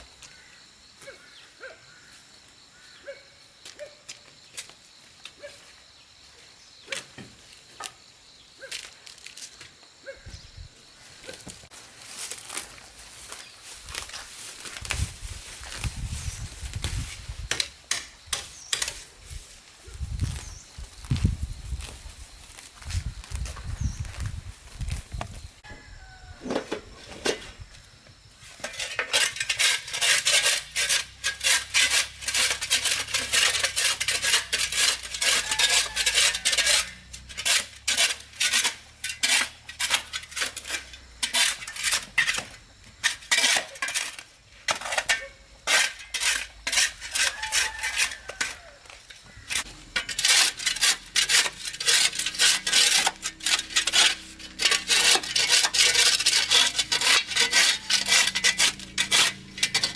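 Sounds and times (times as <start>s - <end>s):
rapid scraping strokes: 28.5s - 45.1s, 49.5s - 59.9s.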